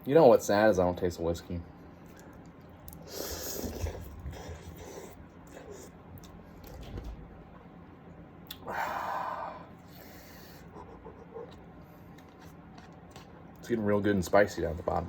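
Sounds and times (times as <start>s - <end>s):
noisy breathy sound: 3.0s - 5.9s, 8.6s - 11.1s.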